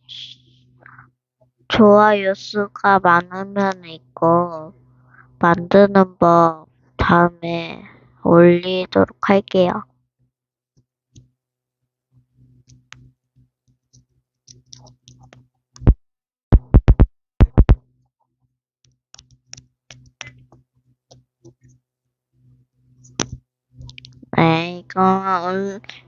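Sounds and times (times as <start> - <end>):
loud sharp taps: 15.8 - 17.8.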